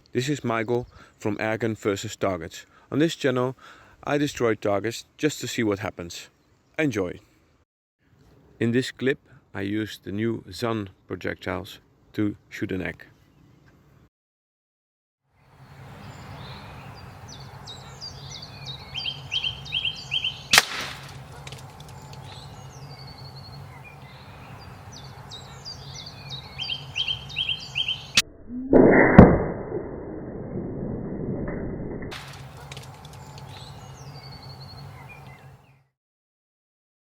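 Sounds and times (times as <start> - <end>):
birdsong: 0.0 - 1.6, 15.4 - 28.2, 32.3 - 36.0
air rifle firing crack: 20.5 - 21.5.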